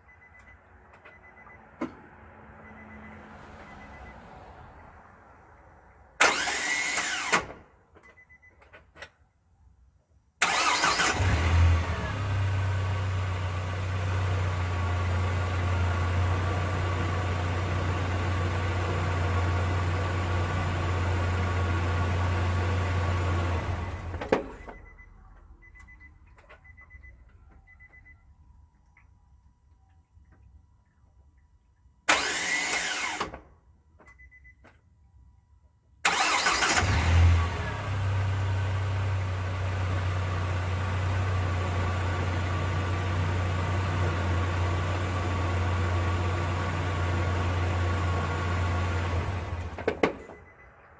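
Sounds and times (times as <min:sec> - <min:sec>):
car engine starting and idling: 0:03.5 - 0:08.1, 0:10.4 - 0:28.4, 0:32.0 - 0:34.1, 0:36.0 - 0:50.9
engine burst: 0:06.2 - 0:07.5, 0:10.4 - 0:12.4, 0:32.1 - 0:33.3, 0:36.0 - 0:38.0.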